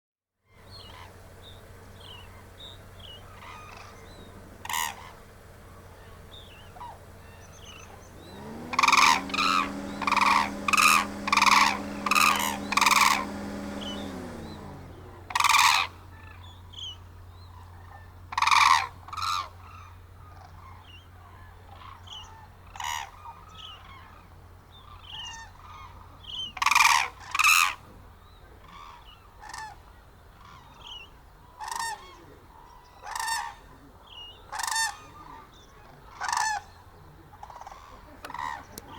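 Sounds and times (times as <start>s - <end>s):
chatter of many birds: 0.6s - 26.8s, 27.5s - 38.9s
cranes calling loudly: 3.3s - 15.8s
steady hum: 5.2s - 15.7s.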